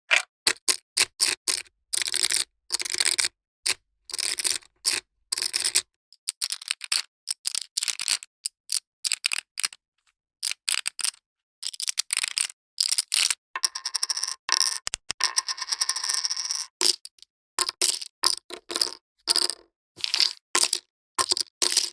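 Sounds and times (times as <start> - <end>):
poker chips clicking: 13.7 - 15.4.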